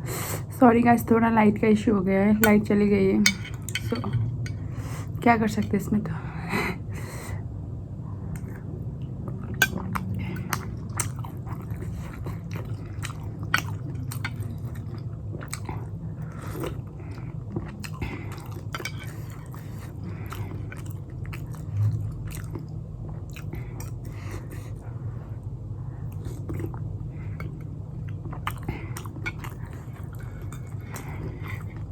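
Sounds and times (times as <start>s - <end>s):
chewing and biting food: 8.4s - 24.7s, 26.1s - 31.9s.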